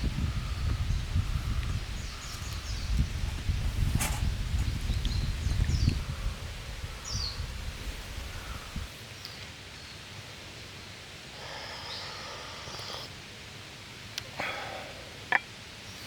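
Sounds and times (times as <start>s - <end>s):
steady rustle: 2.3s - 5.4s.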